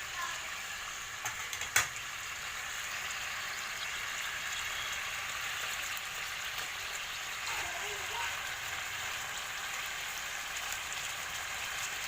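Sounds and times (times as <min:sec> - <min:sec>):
meat sizzling in a pan: 0:00.0 - 0:12.0
utensil tapping pan: 0:01.2 - 0:02.0.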